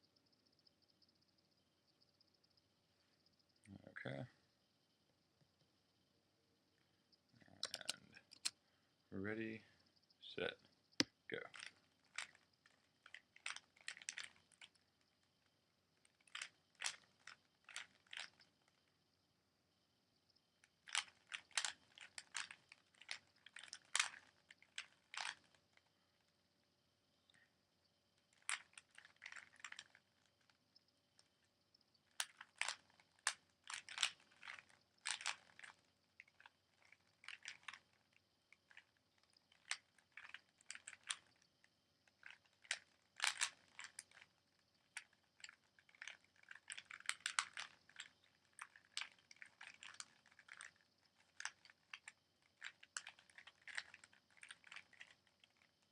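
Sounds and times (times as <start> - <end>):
puzzle cube plastic clicking: 7.4 - 8.6, 11.0 - 18.8, 20.6 - 26.0, 28.2 - 55.9.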